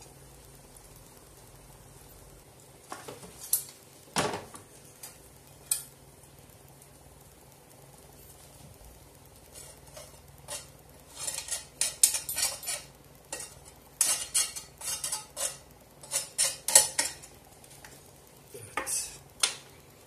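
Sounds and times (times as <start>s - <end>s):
metal utensil scraping a pan: 9.5s - 18.0s.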